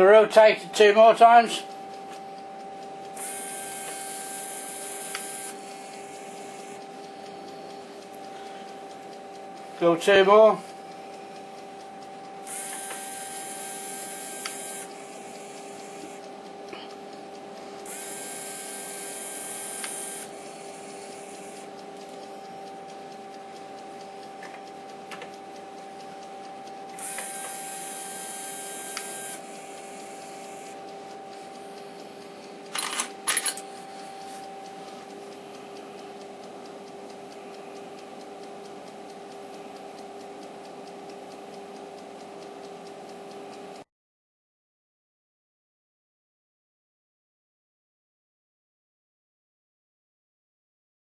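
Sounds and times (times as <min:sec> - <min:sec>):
stepper motor whirring: 0:03.2 - 0:06.8, 0:12.5 - 0:16.2, 0:17.9 - 0:21.7, 0:26.9 - 0:30.8
sharp clicks: 0:12.0 - 0:16.2, 0:18.7 - 0:22.7, 0:26.6 - 0:33.6
lathe humming: 0:12.5 - 0:16.2, 0:17.9 - 0:21.7, 0:27.0 - 0:30.8.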